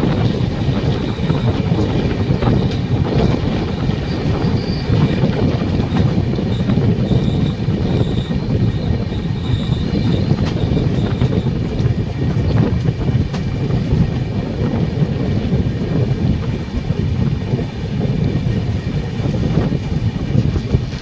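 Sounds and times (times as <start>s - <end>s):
rail joint clicks: 0.0s - 21.0s
train wheels rumbling on track: 0.0s - 21.0s
high wheel squeal: 0.5s - 11.7s.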